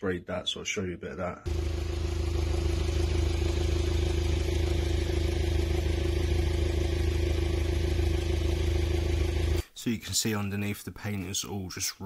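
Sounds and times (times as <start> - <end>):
motor humming: 1.5 - 9.6.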